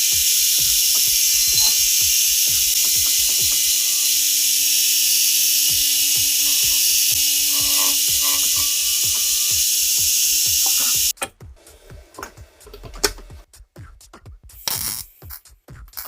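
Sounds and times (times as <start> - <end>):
power tool running: 0.0 - 11.1.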